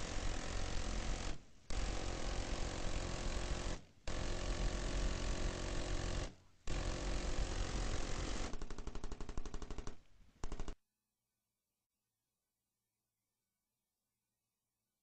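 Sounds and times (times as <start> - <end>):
minigun firing in bursts: 0.0 - 10.8.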